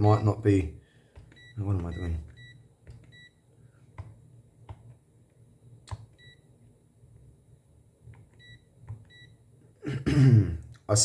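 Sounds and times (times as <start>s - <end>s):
meter key beeps: 1.4s - 3.4s, 6.2s - 6.4s, 8.4s - 9.4s.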